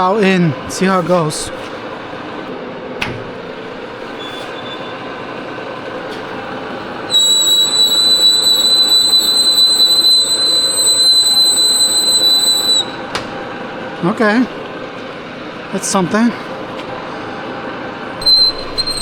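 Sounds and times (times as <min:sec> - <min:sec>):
metal lathe running: 0:00.8 - 0:19.0
high-pitched cutting squeal: 0:07.1 - 0:13.1, 0:18.2 - 0:19.0.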